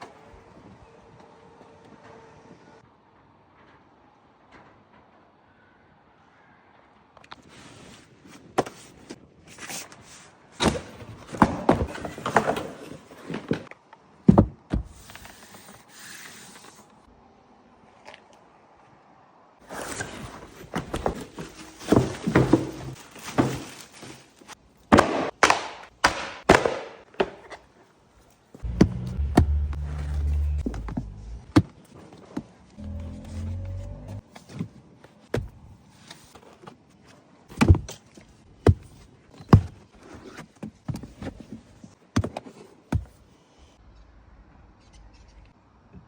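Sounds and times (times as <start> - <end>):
dull heavy thuds: 28.6 - 31.6.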